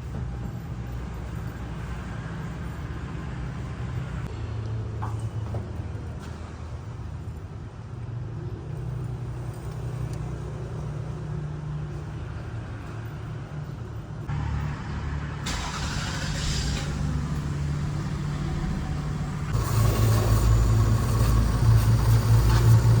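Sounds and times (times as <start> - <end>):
car engine running: 15.4 - 23.0.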